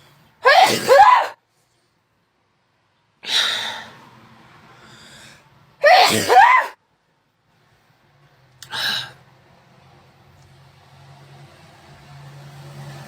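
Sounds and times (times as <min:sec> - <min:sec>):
person sneezing: 0:00.4 - 0:01.4, 0:05.8 - 0:06.8.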